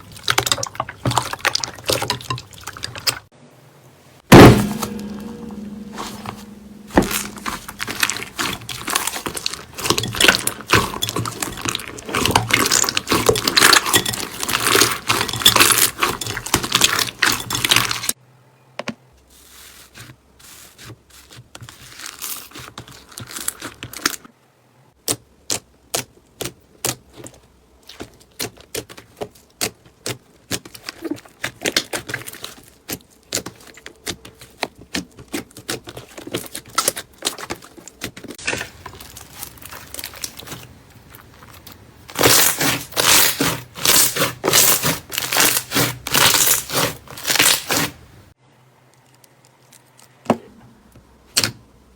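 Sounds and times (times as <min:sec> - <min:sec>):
slime crackling crunch: 0:04.4 - 0:18.2, 0:28.2 - 0:48.0.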